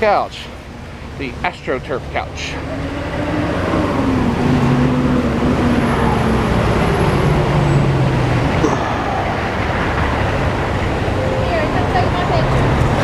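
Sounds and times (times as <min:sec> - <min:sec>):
road traffic noise: 0:00.0 - 0:13.0
vehicle engine running: 0:04.2 - 0:13.0.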